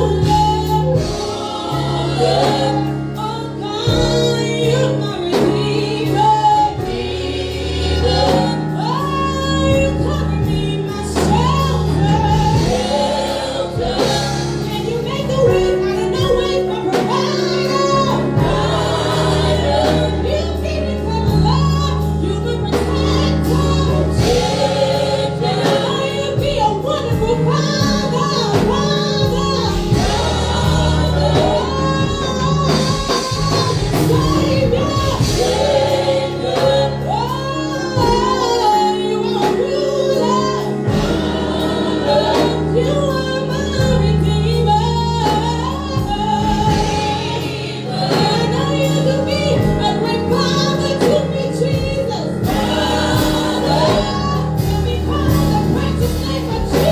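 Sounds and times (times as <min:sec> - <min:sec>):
band with bass and drums: 0:00.0 - 0:56.9
voices singing gospel: 0:00.0 - 0:56.9.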